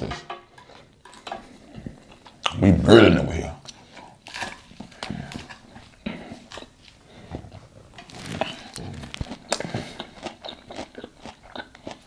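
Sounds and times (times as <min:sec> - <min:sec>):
chewing with wet mouth clicks: 0:08.4 - 0:12.0.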